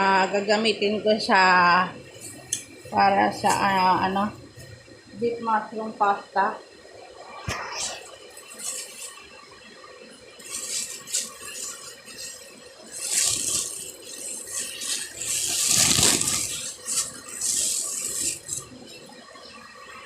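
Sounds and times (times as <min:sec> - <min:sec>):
packages rustling and rattling: 0:08.4 - 0:09.3, 0:10.3 - 0:19.2.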